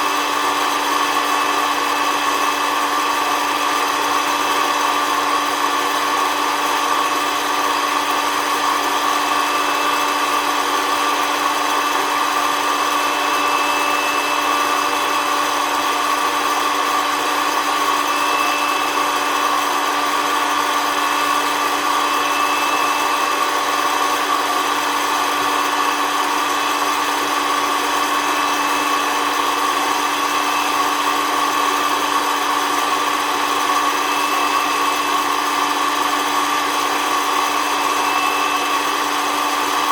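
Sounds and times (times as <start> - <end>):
coffee roaster fan whirring: 0.0 - 39.9.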